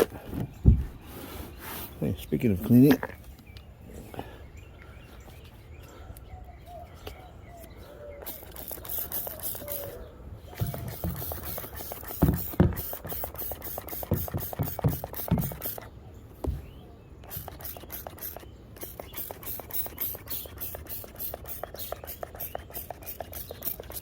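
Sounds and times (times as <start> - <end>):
spray bottle spritzing: 8.2 - 15.9, 17.2 - 24.0
dull handling knocks: 10.6 - 13.0, 16.4 - 16.8.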